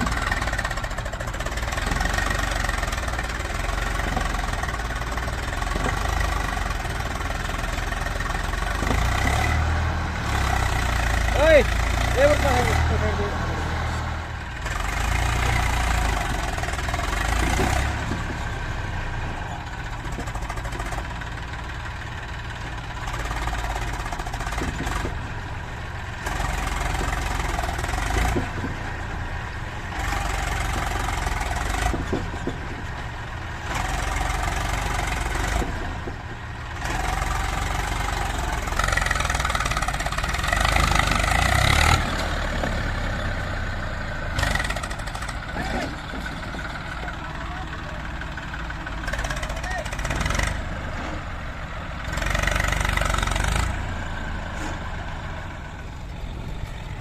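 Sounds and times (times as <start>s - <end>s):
backhoe diesel engine running: 0.0s - 57.0s.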